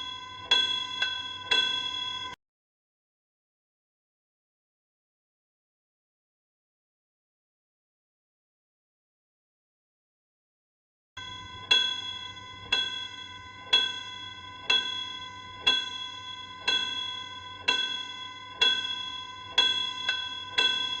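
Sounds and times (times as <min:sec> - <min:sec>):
bell-like metallic tone: 0:00.0 - 0:02.4, 0:11.2 - 0:21.0.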